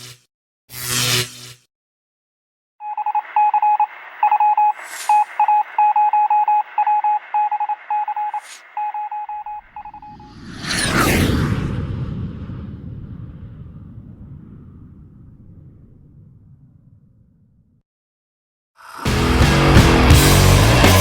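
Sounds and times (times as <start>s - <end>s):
morse code beeps: 2.8s - 10.4s
rising whoosh: 9.7s - 17.2s.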